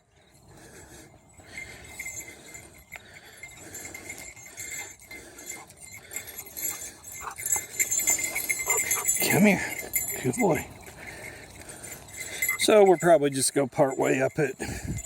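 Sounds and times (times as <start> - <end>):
dog collar tags jingling: 0.3 - 15.0.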